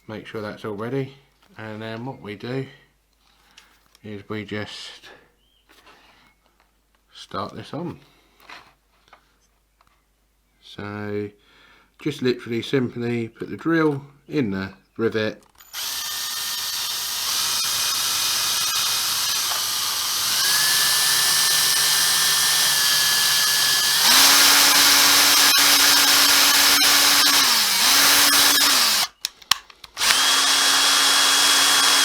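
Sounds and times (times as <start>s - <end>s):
electric drill motor whine: 15.7s - 29.2s, 30.0s - 32.0s.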